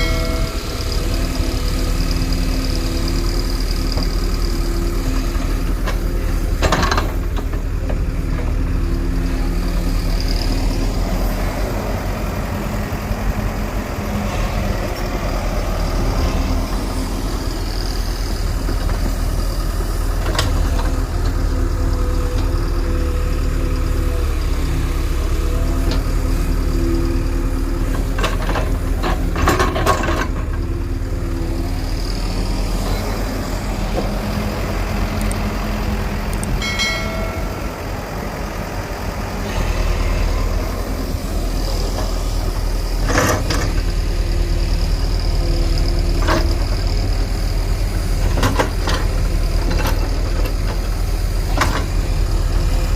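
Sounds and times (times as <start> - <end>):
diesel engine droning: 0.0 - 52.9
brief high tone: 36.6 - 38.0.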